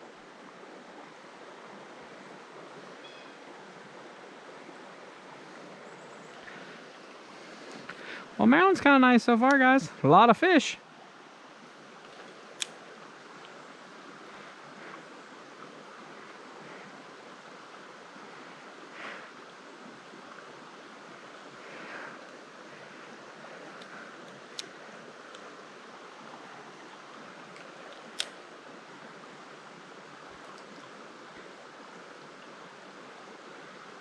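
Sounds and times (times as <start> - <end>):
creek water running: 0.0 - 34.0
sharp clicks: 27.6 - 28.4.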